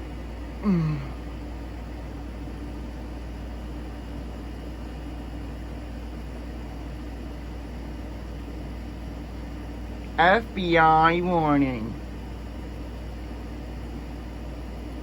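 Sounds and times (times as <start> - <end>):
tv and vcr hum and hiss: 0.0 - 15.0.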